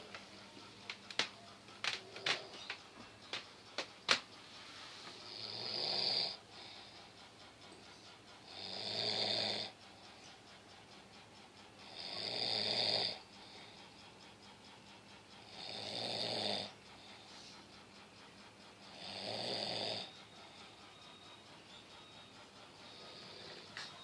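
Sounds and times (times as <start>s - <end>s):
child snoring: 5.2s - 6.4s, 8.5s - 9.8s, 11.8s - 13.2s, 15.5s - 16.8s, 18.9s - 20.1s.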